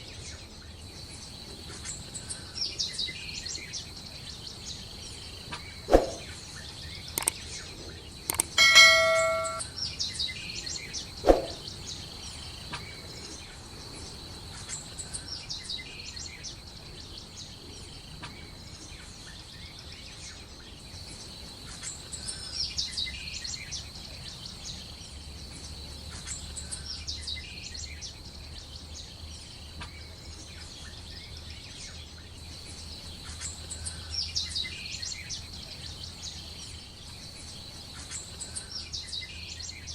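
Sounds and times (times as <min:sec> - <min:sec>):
birds chirping: 0:05.4 - 0:09.6
bell-like ring: 0:08.3 - 0:09.6
steady high-pitched tone: 0:08.3 - 0:09.6.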